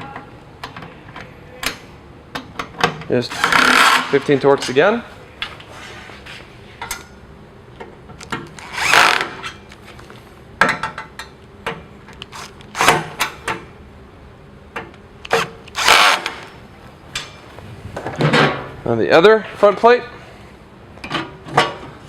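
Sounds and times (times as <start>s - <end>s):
power screwdriver driving screws: 3.3s - 4.1s, 8.6s - 9.3s, 12.2s - 13.0s, 15.3s - 16.5s.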